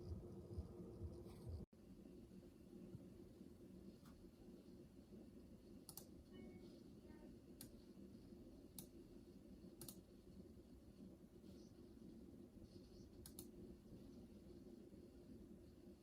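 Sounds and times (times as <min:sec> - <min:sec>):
electrical coil whine and hum: 0:00.0 - 0:16.0
sharp clicks: 0:05.9 - 0:06.1, 0:09.8 - 0:10.0, 0:13.2 - 0:13.6.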